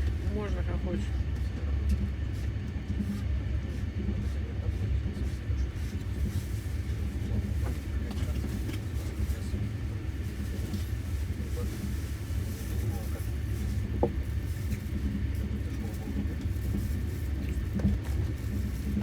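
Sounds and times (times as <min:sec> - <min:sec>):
train rumbling: 0:05.6 - 0:19.0.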